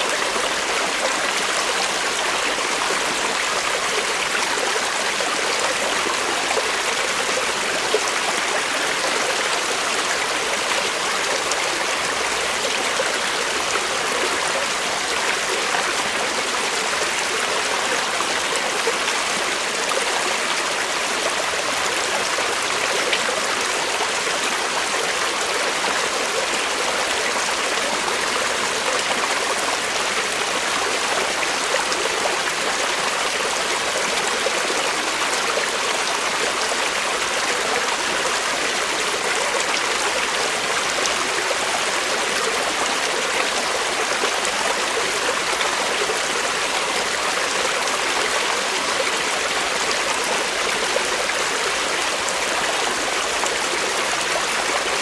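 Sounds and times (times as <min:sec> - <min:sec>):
creek water flowing over rocks: 0:00.0 - 0:55.0.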